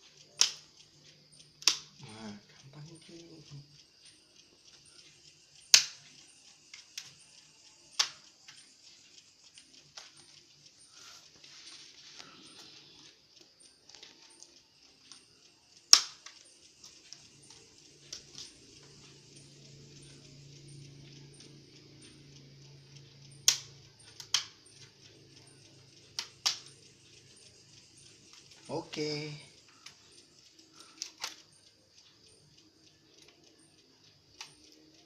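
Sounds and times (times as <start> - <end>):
steady hiss: 0.0 - 35.0
tools and plastic parts clicking: 30.9 - 31.5.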